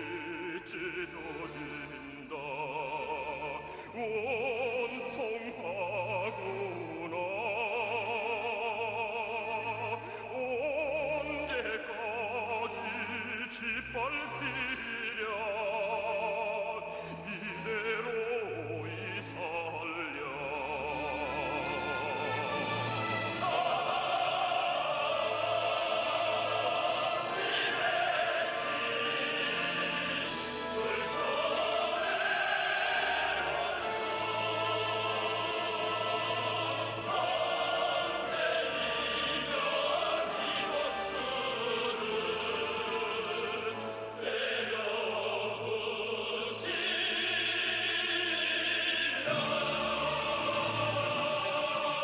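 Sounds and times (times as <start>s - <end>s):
operatic singing: 0.0s - 52.0s
orchestra playing: 17.2s - 45.0s, 49.2s - 52.0s.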